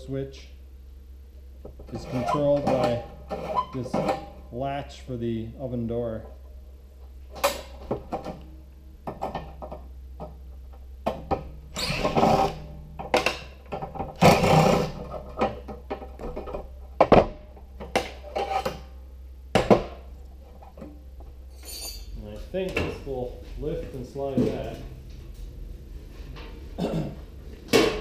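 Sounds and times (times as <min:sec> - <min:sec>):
metal scraping rattles: 0:01.8 - 0:04.4.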